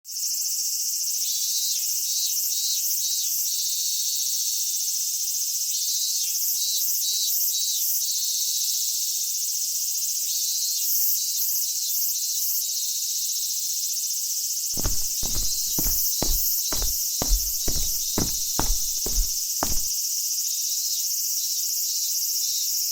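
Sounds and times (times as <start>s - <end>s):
thumps like footsteps: 14.8s - 20.0s.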